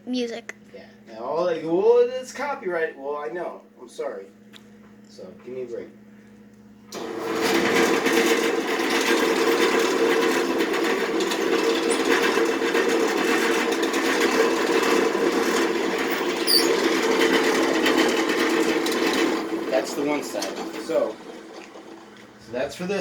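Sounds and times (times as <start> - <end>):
electric drill motor running: 6.9 - 22.5.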